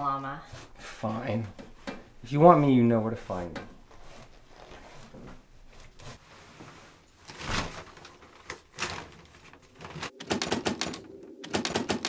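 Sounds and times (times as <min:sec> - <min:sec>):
sharp clicks: 0:10.2 - 0:12.0.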